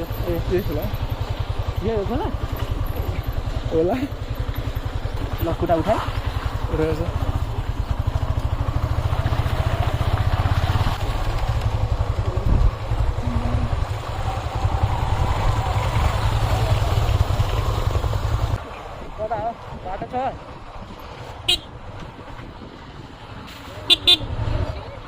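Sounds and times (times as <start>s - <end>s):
motorcycle engine running: 0.0s - 18.6s
wind and road noise: 0.0s - 25.0s.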